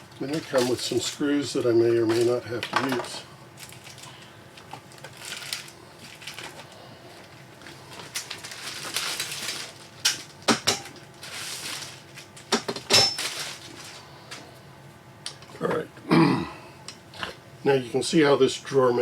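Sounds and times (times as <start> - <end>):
crinkly rustling: 0.1 - 12.5, 13.2 - 14.5.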